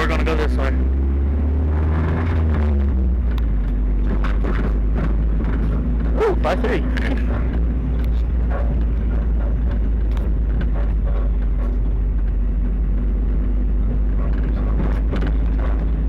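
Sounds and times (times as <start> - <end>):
car engine drone: 0.0 - 16.0
low road rumble: 0.0 - 16.0.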